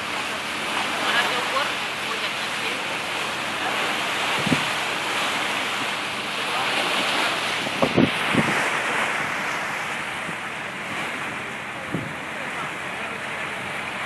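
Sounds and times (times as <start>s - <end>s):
water rushing along boat hull: 0.0s - 14.0s
wind buffeting microphone: 4.1s - 14.0s.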